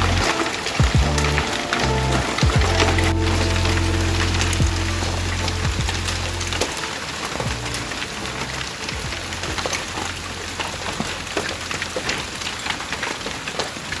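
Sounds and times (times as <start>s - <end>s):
rain hissing: 0.0s - 14.0s
hailstones clicking on hard surfaces: 5.9s - 14.0s.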